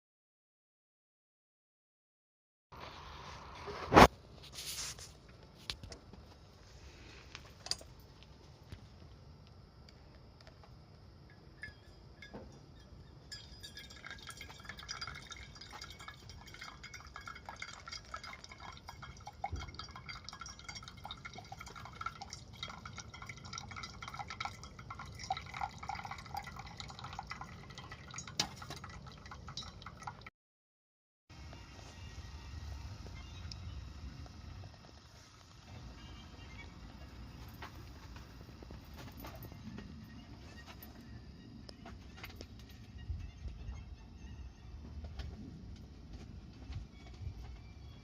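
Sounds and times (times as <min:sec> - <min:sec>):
liquid bubbling and dripping: 0:13.3 - 0:30.3.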